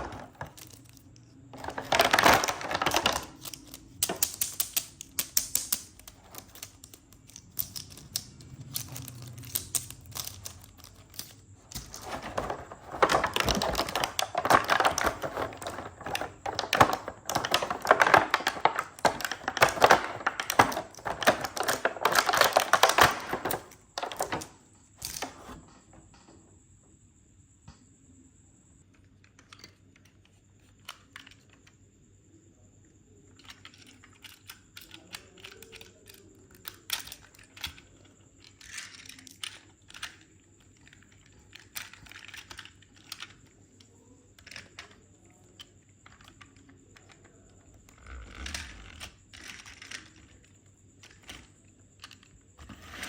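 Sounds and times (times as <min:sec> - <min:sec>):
plastic and cardboard packaging crackling: 0:00.0 - 0:01.0, 0:01.6 - 0:25.6.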